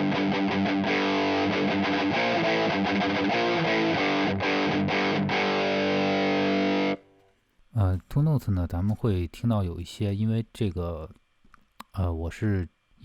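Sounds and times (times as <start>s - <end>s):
distorted electric guitar: 0.0s - 7.1s.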